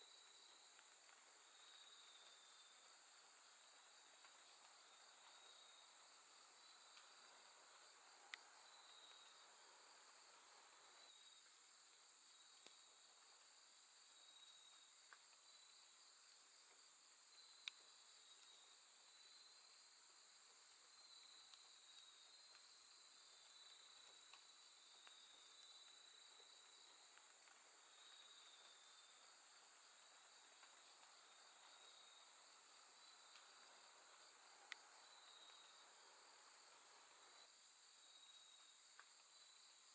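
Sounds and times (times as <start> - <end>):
faint clicks: 17.6 - 17.8
crickets trilling: 20.5 - 39.9.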